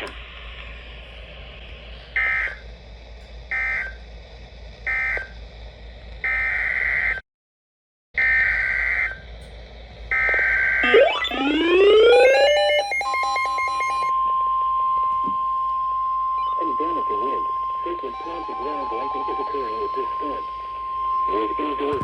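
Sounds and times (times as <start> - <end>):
buzzy data tone bursts: 10.1 - 14.1
rising glide of tones: 10.8 - 14.1.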